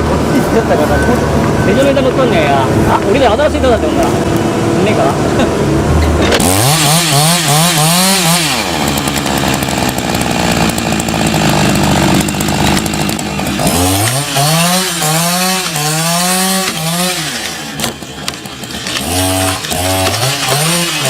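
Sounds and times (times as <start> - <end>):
chainsaw engine revving: 0.0 - 21.0.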